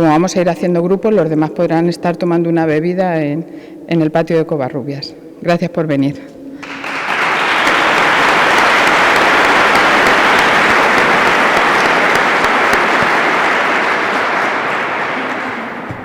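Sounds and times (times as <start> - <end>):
audience applauding: 6.6 - 16.0.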